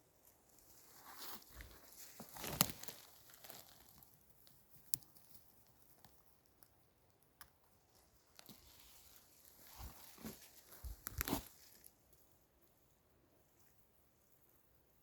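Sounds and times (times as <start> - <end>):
dry leaves and twigs rustling: 0.0 - 6.2, 7.9 - 12.4.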